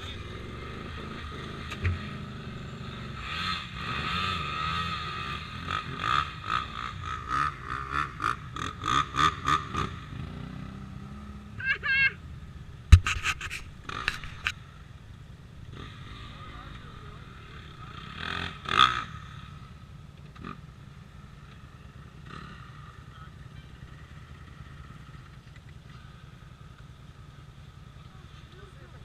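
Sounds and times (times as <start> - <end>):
quad engine revving: 0.0 - 11.6, 13.8 - 14.5, 15.7 - 19.7.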